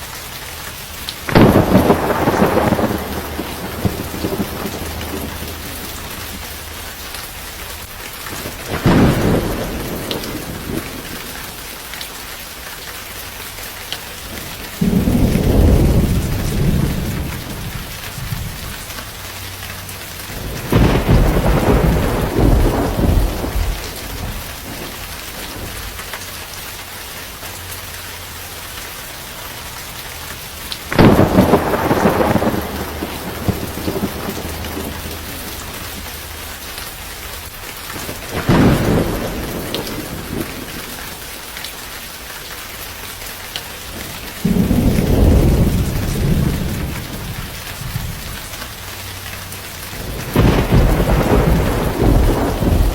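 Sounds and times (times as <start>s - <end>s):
heavy rain: 0.0s - 52.9s
thunder rolling: 1.2s - 6.9s, 8.3s - 11.3s, 14.3s - 18.9s, 20.3s - 26.0s, 30.9s - 36.4s, 37.9s - 41.1s, 44.0s - 48.5s, 50.0s - 52.9s.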